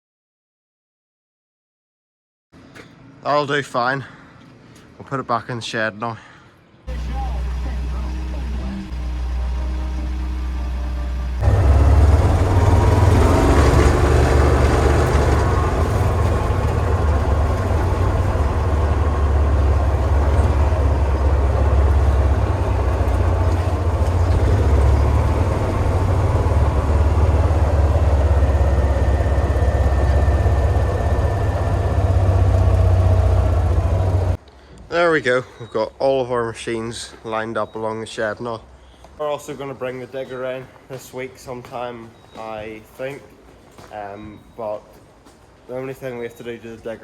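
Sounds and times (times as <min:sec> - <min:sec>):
farm vehicle engine rumbling: 0:06.9 - 0:34.4.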